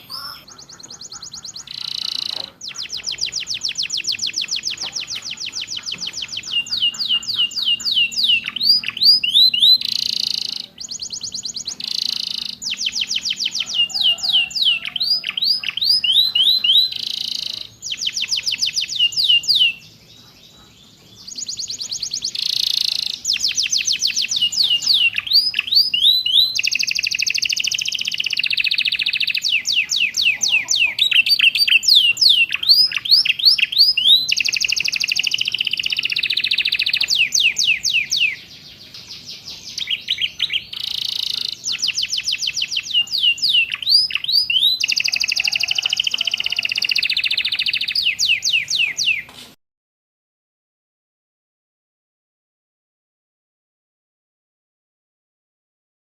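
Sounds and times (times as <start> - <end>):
canary singing: 0.0 - 49.3.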